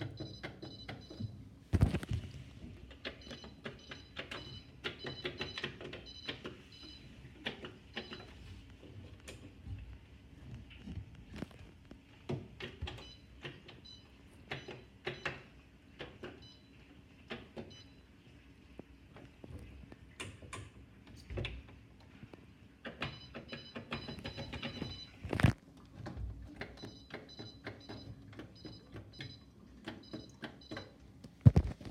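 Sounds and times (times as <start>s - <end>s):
washing machine clicks and knocks: 0.0s - 8.4s, 12.2s - 16.6s, 22.8s - 25.2s, 26.0s - 31.9s.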